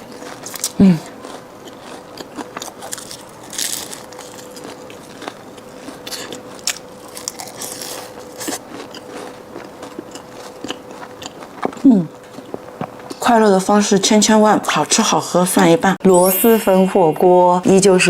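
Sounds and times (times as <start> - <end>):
chewing: 0.0 - 13.2
crunching bites of pastry: 0.0 - 13.2
faint steady hum: 0.0 - 18.0.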